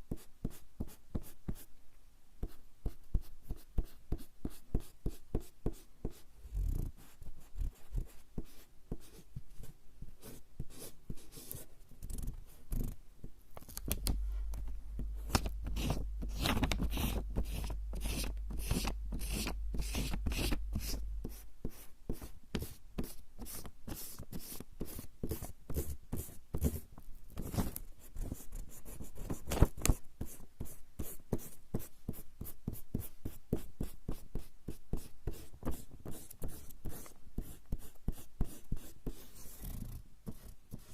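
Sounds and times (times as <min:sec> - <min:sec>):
eraser rubbing on paper: 0:15.3 - 0:26.8.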